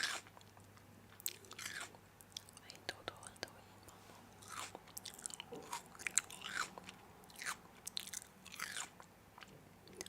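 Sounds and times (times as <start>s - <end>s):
crunchy chewing of crisp food: 0.0s - 2.7s, 4.3s - 10.0s.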